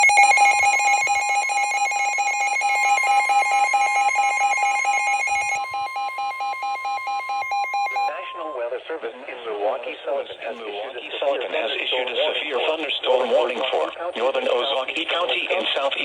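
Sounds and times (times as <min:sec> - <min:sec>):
rapid electronic beeping: 0:00.0 - 0:08.6
steady alarm tone: 0:00.0 - 0:08.6.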